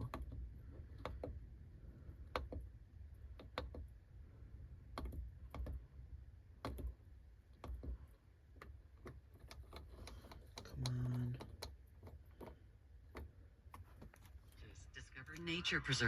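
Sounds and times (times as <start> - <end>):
faint low rumble: 12.6 - 16.0.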